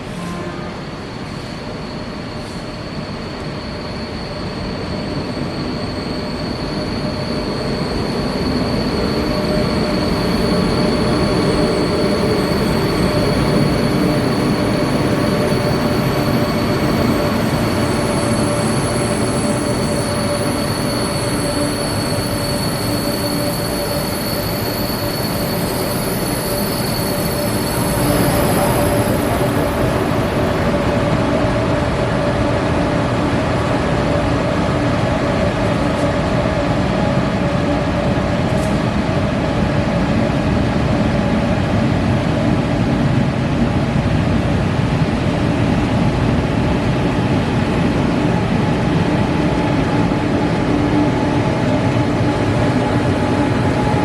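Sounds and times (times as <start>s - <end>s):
high-speed train rumble: 0.0s - 54.0s
high-pitched whines: 1.7s - 31.3s.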